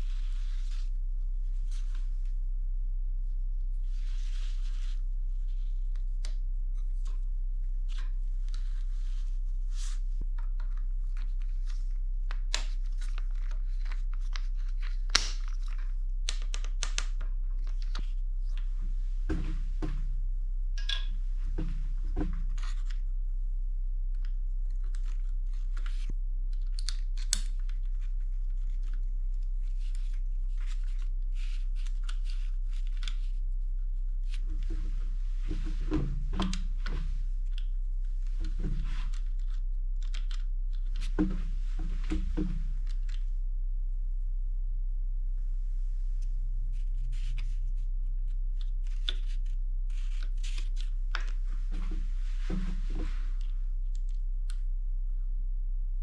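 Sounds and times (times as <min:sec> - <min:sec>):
low electrical hum: 0:00.0 - 0:56.0.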